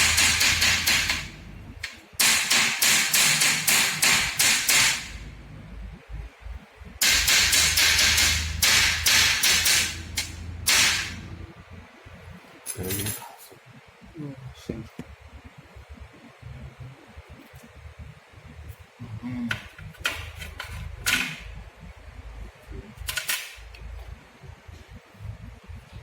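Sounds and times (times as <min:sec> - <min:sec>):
rapid sharp knocks: 0:00.0 - 0:01.4, 0:02.2 - 0:05.2, 0:07.0 - 0:11.2.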